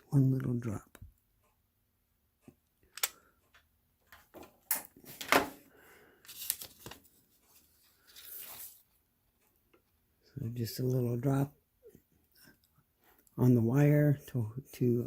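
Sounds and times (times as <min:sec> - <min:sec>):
sharp clicks: 0:02.8 - 0:03.3.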